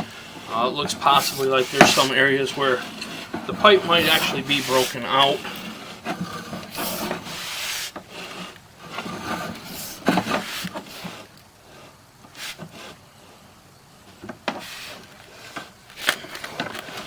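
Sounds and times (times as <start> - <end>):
cable scraping through a pipe: 0.0 - 13.0.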